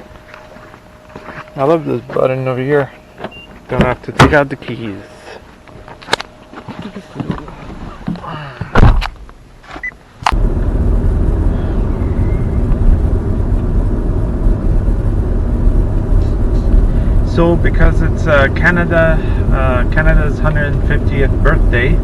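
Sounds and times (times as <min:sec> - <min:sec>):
loud thump: 0:08.6 - 0:09.2
road and wind noise: 0:08.8 - 0:22.0.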